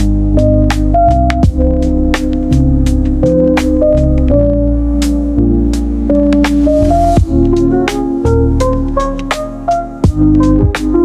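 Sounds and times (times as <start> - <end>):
deep bass: 0.0 - 11.0
synth chords: 0.0 - 11.0
sharp percussive beat: 6.3 - 11.0.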